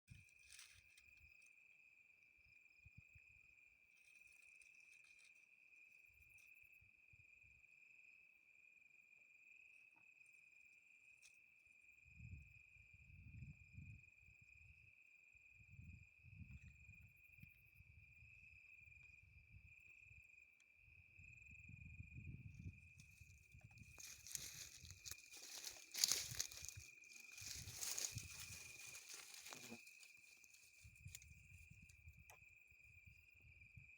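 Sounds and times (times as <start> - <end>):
high insect trill: 0.1 - 33.9.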